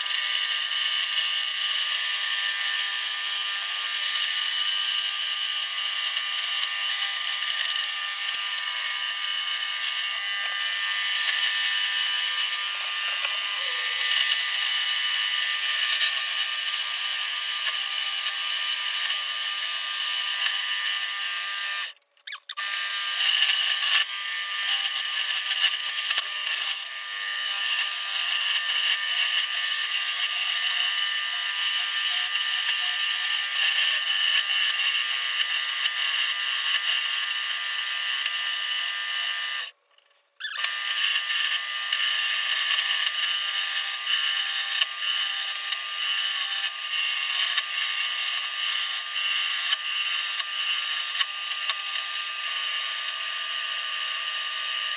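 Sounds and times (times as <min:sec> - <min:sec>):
wood lathe motor hum: 0:00.0 - 0:22.0, 0:22.6 - 0:39.8, 0:40.4 - 0:54.9
turning tool scraping wood: 0:10.2 - 0:14.7.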